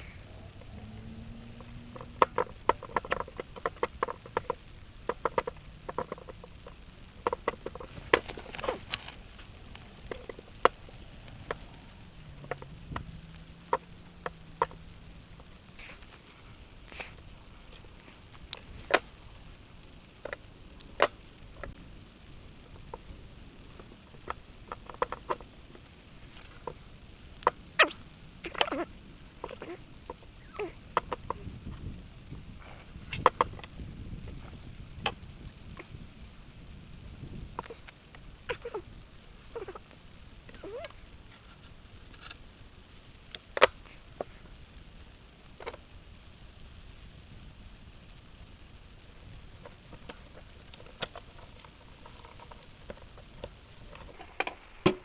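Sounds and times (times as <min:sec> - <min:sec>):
low steady hiss: 0:00.0 - 0:55.0
sharp clicks and knocks: 0:01.5 - 0:14.8.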